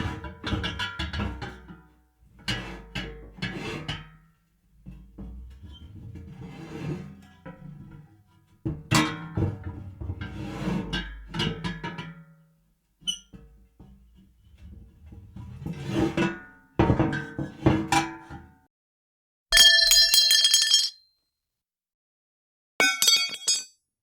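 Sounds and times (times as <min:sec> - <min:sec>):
metal pipes clattering on floor: 0:22.8 - 0:23.7.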